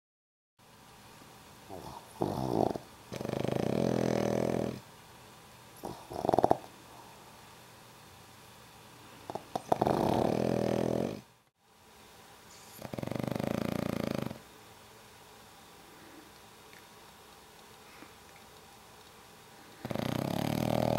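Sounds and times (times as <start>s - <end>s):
dog snorting: 1.7s - 4.8s, 5.8s - 6.7s, 9.3s - 11.3s, 12.5s - 14.4s, 19.8s - 20.9s
dogs snoring: 1.7s - 4.9s, 5.8s - 6.9s, 9.2s - 11.4s, 12.5s - 14.5s, 19.6s - 20.9s.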